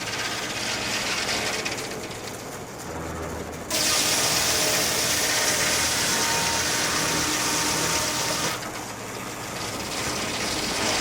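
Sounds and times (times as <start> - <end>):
sawmill machinery hissing: 3.7 - 11.0.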